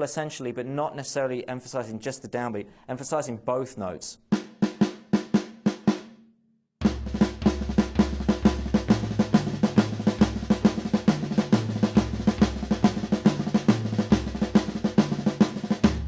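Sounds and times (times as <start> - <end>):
drum kit playing fast triplets: 4.3 - 6.1, 6.8 - 16.0.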